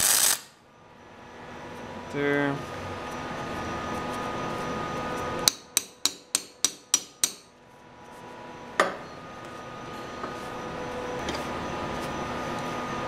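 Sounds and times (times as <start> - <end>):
hammer striking steel: 5.4 - 7.5.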